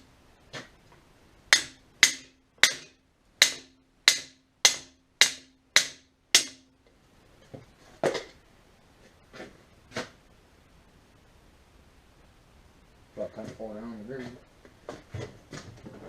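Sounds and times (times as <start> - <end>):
hammer blows on metal: 1.5 - 6.7.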